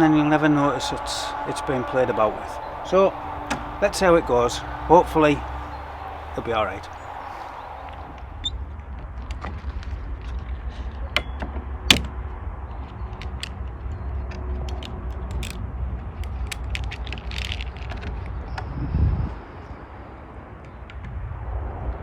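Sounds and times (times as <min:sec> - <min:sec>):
low steady rumble: 0:00.0 - 0:10.7.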